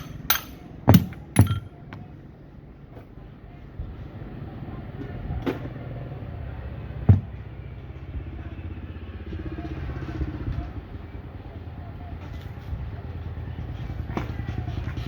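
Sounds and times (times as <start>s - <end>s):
sharp knocks: 0.0s - 1.6s.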